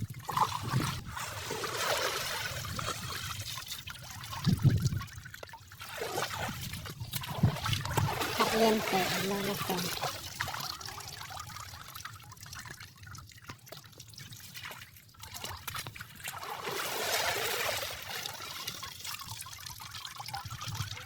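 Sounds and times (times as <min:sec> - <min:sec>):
water drips and splashes: 0:00.0 - 0:21.0
water trickling and sloshing: 0:00.0 - 0:21.0
rush of water: 0:05.8 - 0:11.0.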